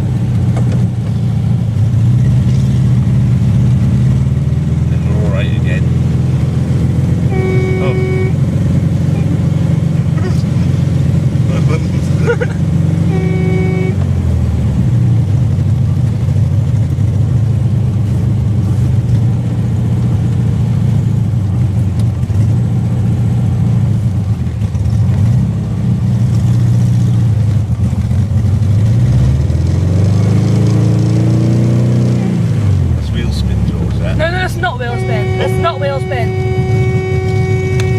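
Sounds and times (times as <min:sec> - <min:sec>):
car engine running: 0:00.0 - 0:37.9
car horn: 0:07.2 - 0:08.6, 0:13.0 - 0:14.1, 0:34.2 - 0:37.9.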